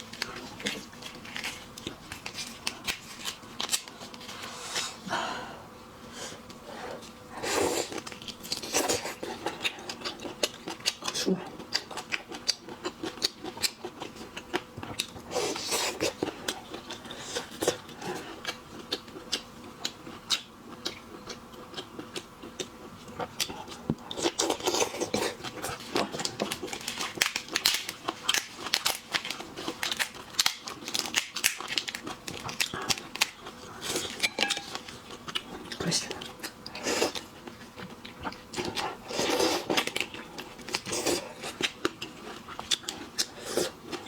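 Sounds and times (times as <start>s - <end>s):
prawn shells cracking and crackling: 25.8s - 34.9s.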